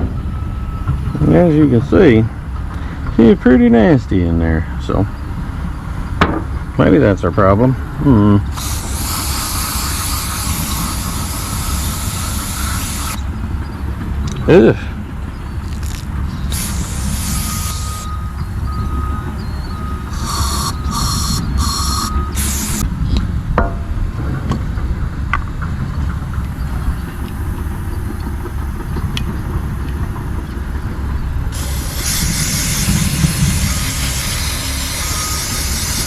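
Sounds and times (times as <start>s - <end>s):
engine running: 0.0s - 36.0s
compressed air hissing: 8.5s - 13.2s, 15.7s - 18.6s, 20.0s - 22.8s, 31.5s - 36.0s.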